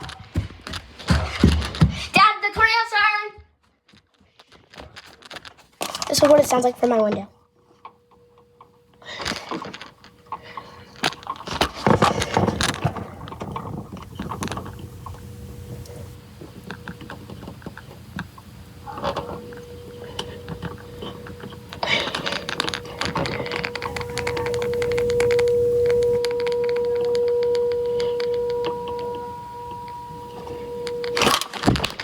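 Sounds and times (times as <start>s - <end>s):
distant wailing warning siren: 12.6s - 32.0s.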